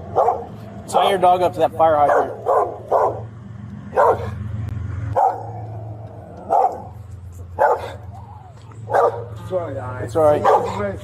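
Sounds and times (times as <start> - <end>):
dog barking: 0.1 - 1.2, 2.0 - 3.3, 3.9 - 4.4, 5.1 - 5.7, 6.4 - 7.0, 7.6 - 8.1, 8.9 - 9.4, 10.3 - 10.9.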